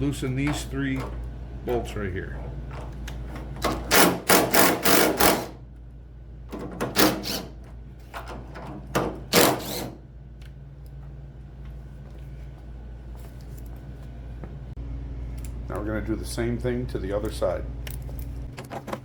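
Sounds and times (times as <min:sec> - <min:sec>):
impact wrench rattling: 0:02.6 - 0:05.6.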